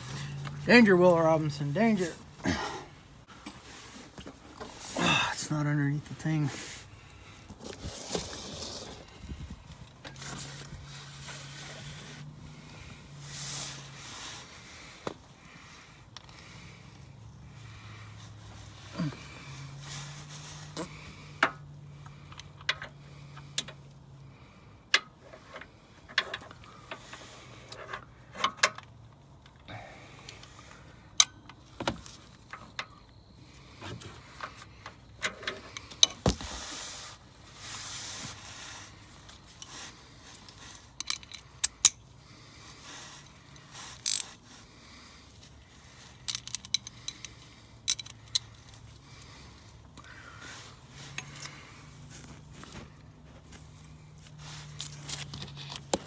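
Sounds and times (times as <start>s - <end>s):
metal tools clinking: 43.2s - 44.3s, 46.2s - 48.6s, 51.1s - 51.6s.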